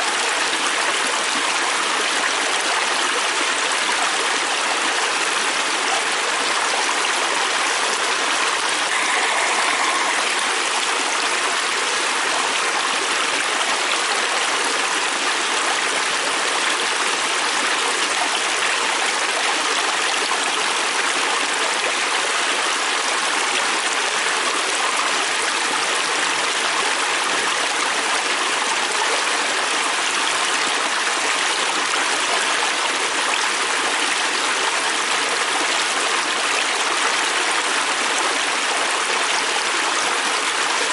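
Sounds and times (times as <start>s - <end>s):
river stream rushing: 4.3s - 14.0s.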